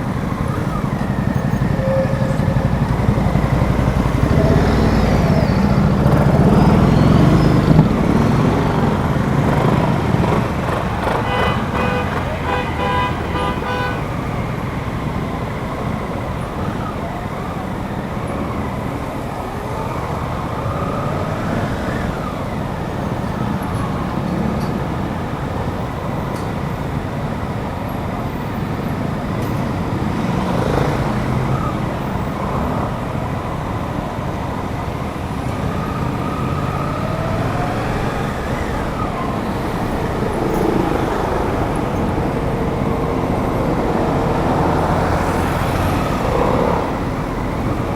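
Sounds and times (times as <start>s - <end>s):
wind rush on microphone: 13.2s - 47.9s.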